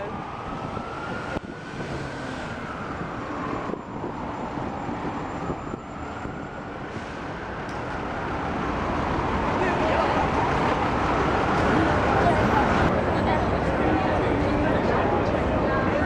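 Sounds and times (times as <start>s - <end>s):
faint siren wailing: 0.0s - 13.7s
city street traffic: 0.0s - 16.0s.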